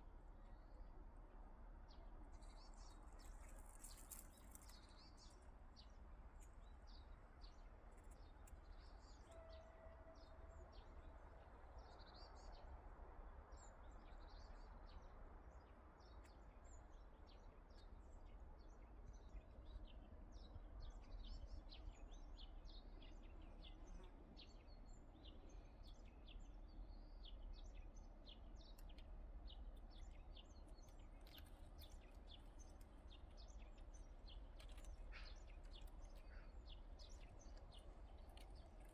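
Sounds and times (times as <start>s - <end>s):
small birds chirping: 1.9s - 9.4s, 16.0s - 38.9s.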